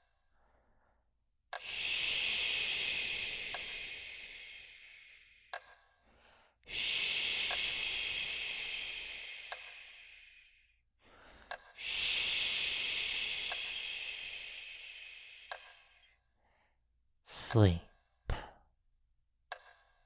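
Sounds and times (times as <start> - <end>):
whispered shushing: 17.3 - 18.5.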